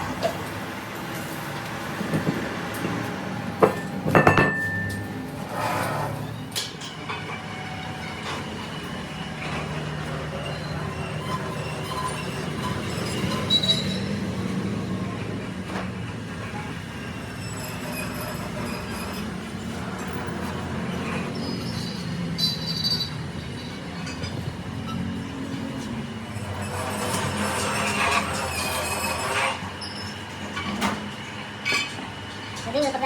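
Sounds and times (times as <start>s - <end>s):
metalworking machine humming: 0.1s - 33.0s
high-pitched metallic squeals: 3.6s - 14.8s, 16.4s - 30.8s.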